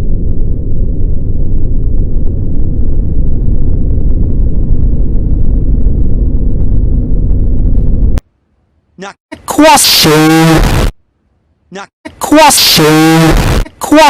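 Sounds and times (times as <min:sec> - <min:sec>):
distorted bass-heavy explosion rumble: 0:00.0 - 0:08.2, 0:10.2 - 0:11.0, 0:12.8 - 0:13.7.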